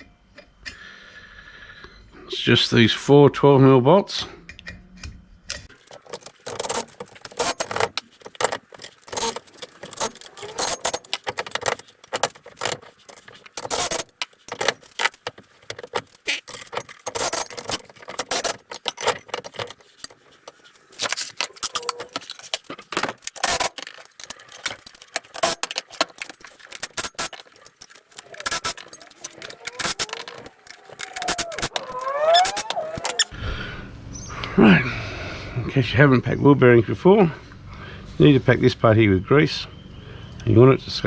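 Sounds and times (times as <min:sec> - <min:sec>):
metal tools clinking: 0:05.7 - 0:33.3.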